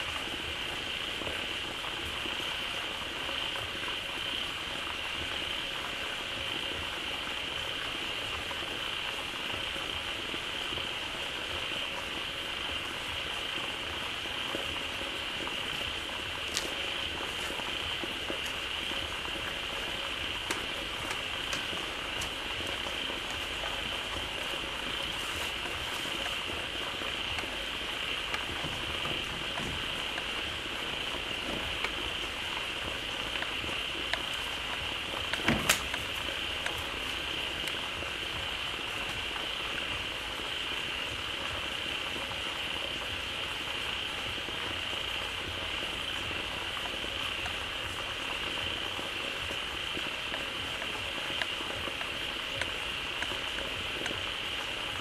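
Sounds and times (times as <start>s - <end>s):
frogs croaking in chorus: 0.0s - 55.0s
steady high buzz: 0.0s - 55.0s
sharp clicks: 35.2s - 37.8s.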